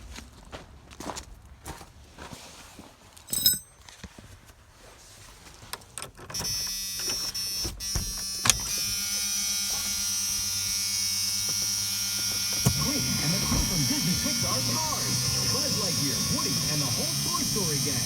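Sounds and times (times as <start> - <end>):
car engine starting and running: 6.4 - 18.0
high whine: 8.4 - 18.0.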